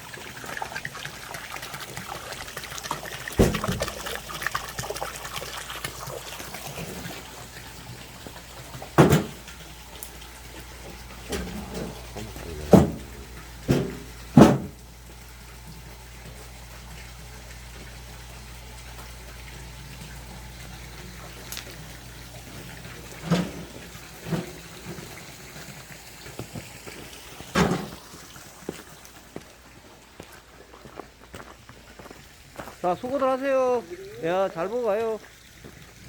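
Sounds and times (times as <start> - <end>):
water running: 0.0 - 36.0
sharp knocks: 11.3 - 14.8.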